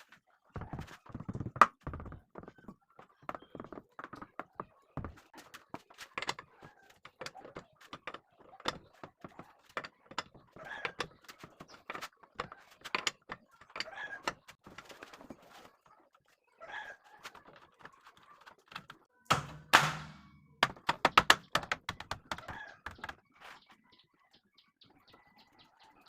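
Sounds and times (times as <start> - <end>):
tools knocking and rattling: 3.2 - 15.3.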